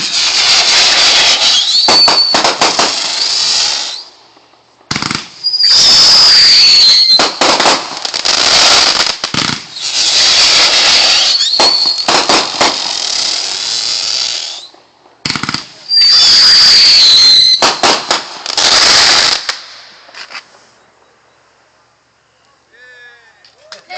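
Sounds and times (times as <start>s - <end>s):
fireworks hissing and crackling: 0.0s - 21.1s
firework whistle falling in pitch: 5.4s - 7.3s, 15.9s - 17.6s.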